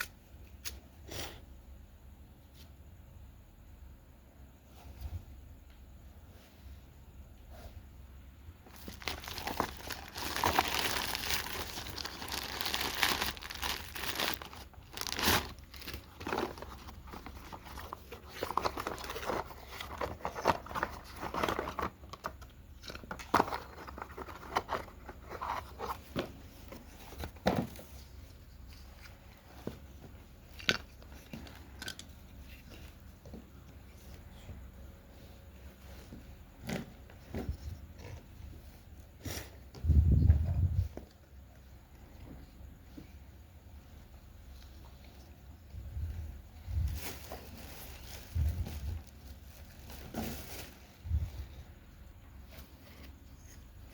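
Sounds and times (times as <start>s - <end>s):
packaging crinkling and tearing: 8.7s - 26.0s.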